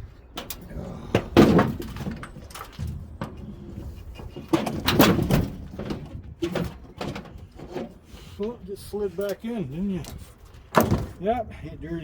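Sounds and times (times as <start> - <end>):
metal clanking and scraping: 0.0 - 9.4.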